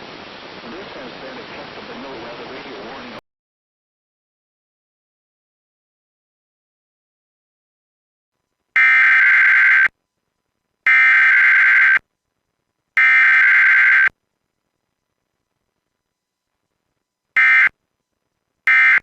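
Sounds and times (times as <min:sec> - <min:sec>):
digital data tone bursts: 0:10.9 - 0:12.0.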